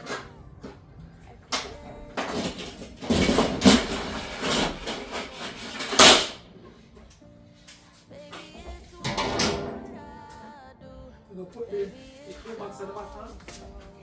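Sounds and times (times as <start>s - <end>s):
household items rustling and knocking: 0.0s - 10.2s.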